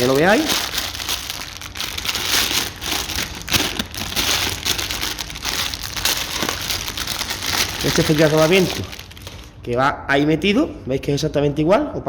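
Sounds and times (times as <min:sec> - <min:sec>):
packaging crinkling: 0:00.0 - 0:09.6.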